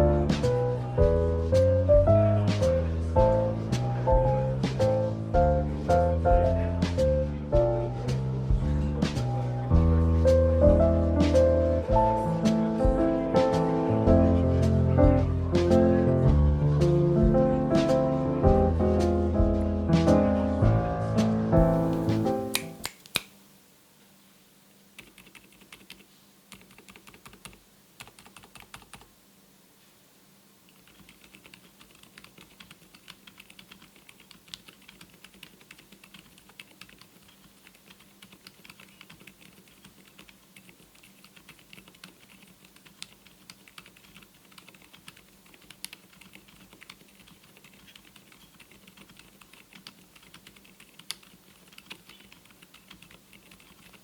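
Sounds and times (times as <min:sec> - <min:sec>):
muted keyboard typing: 0:25.0 - 0:29.1, 0:30.7 - 0:54.0.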